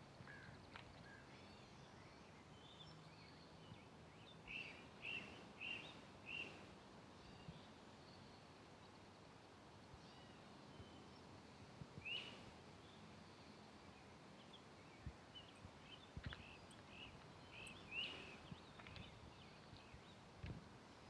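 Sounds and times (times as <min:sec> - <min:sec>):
soft footsteps on trail: 0:00.1 - 0:01.2, 0:14.9 - 0:20.9
faint bird chirps: 0:00.2 - 0:09.0, 0:09.9 - 0:11.3, 0:12.0 - 0:20.2.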